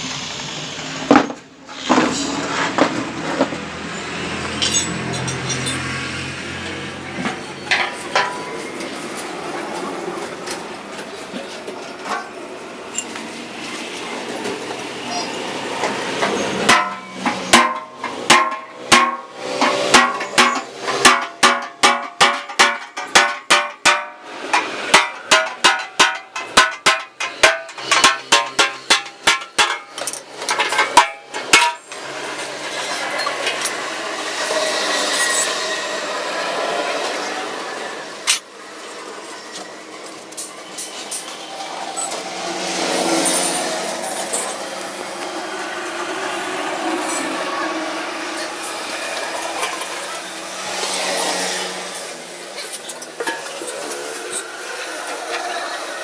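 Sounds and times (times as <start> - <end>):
workshop noise: 0.0 - 56.0
hammer striking sheet-steel tank: 16.2 - 31.9.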